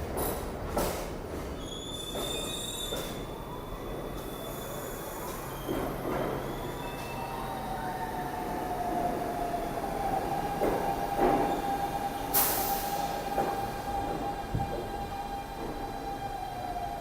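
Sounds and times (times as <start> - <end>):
subway wheels squealing: 0.2 - 17.0
air hissing: 12.3 - 13.7.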